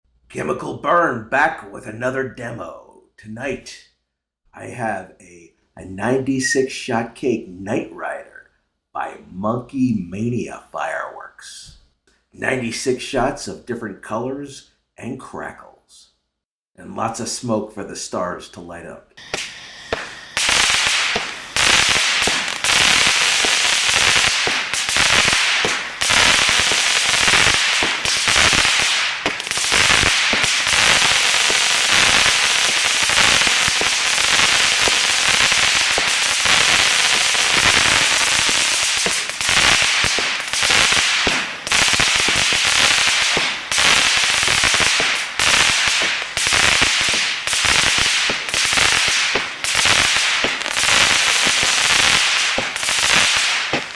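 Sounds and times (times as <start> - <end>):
crackling firework stars: 19.2 - 53.9
firework volley: 19.2 - 53.9.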